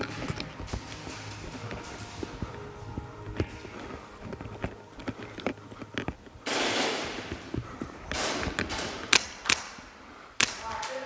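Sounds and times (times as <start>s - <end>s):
airsoft guns firing: 6.4s - 7.5s, 8.1s - 11.0s
sharp loud cracks: 6.4s - 11.0s.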